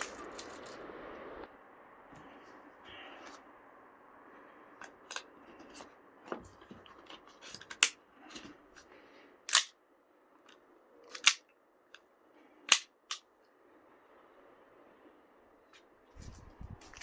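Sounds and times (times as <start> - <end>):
pistol slide clacks: 9.5 - 9.7, 11.1 - 11.4, 12.7 - 13.2
small metallic clicks: 9.5 - 9.7, 10.4 - 12.1, 12.7 - 13.2.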